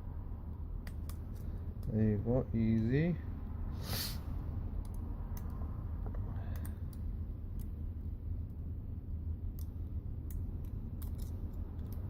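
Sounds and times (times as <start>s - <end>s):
steady low hum: 0.0s - 12.0s
faint clicks of phone parts: 4.8s - 7.7s.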